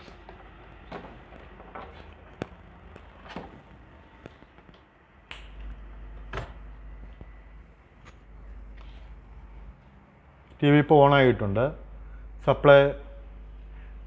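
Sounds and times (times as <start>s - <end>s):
low electrical hum: 0.0s - 14.0s
television switch clicks: 5.3s - 14.0s.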